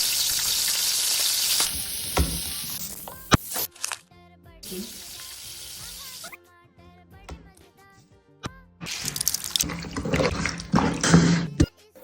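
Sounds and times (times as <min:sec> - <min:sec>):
food sizzling in a pan: 0:00.0 - 0:03.8, 0:04.6 - 0:06.4
music: 0:01.6 - 0:12.0.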